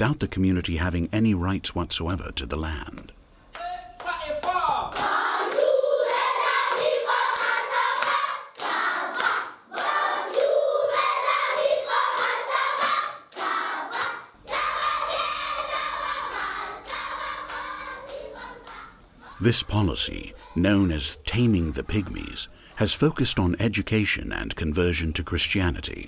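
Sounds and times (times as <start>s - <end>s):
hand claps: 2.9s - 18.9s
group of people singing: 5.0s - 21.0s.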